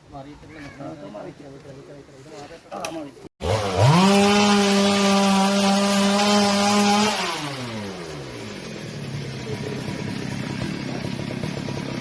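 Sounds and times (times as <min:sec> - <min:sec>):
chainsaw revving then idling: 0:03.4 - 0:12.0.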